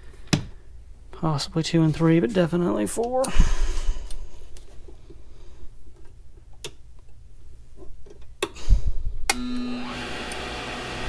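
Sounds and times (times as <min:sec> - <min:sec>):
cutter motor humming: 0:09.3 - 0:11.0.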